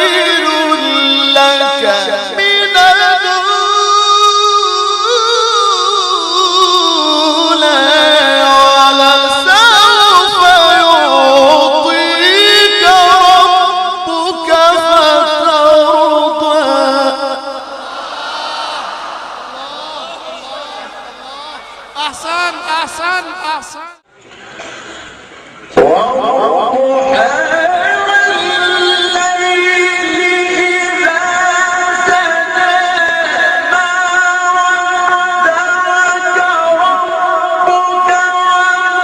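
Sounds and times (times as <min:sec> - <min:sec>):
person reciting in melodic chant: 0:00.0 - 0:18.0, 0:19.5 - 0:24.0, 0:25.8 - 0:39.0.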